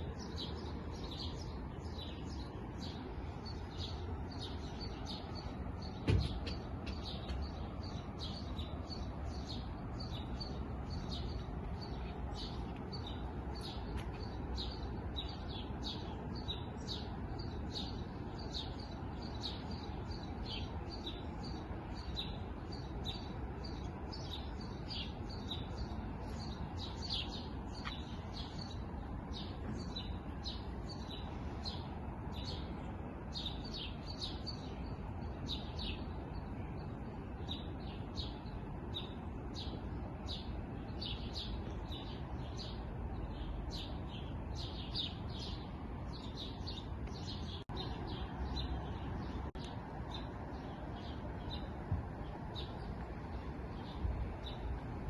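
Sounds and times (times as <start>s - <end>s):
small birds chirping: 0.0s - 55.0s
thump: 6.0s - 7.4s.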